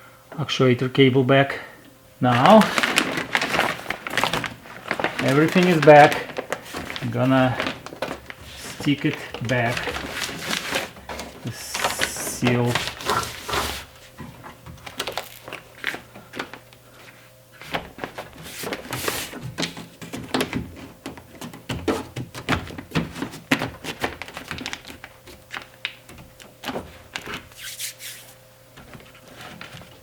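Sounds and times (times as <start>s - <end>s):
plastic sheet crinkling: 2.2s - 16.7s, 17.6s - 30.0s.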